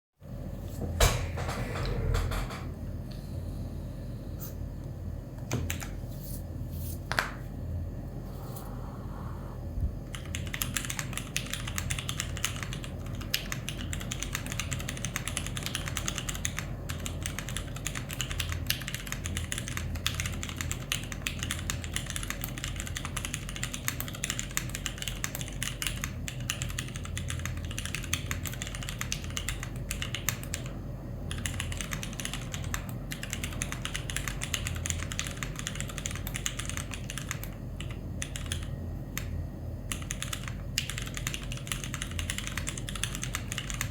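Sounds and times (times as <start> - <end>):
typing on a mechanical keyboard: 5.5 - 6.0, 10.1 - 43.9.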